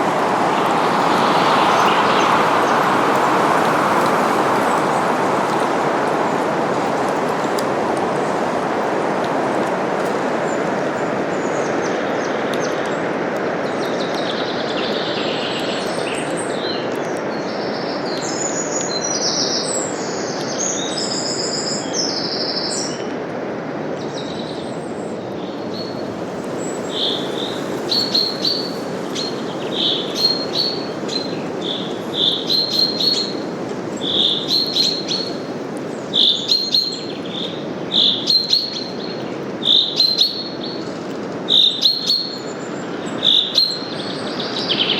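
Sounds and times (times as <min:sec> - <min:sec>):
wind rustling leaves: 0:00.0 - 0:44.9
bird warbling song: 0:26.6 - 0:33.4, 0:34.0 - 0:44.9.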